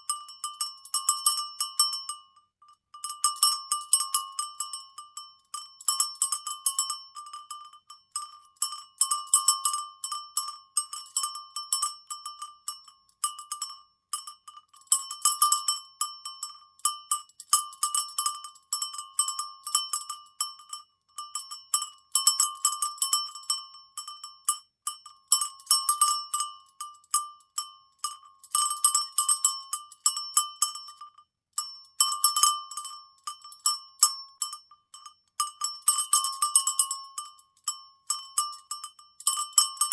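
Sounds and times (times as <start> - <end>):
cowbell clanking: 25.0 - 39.9.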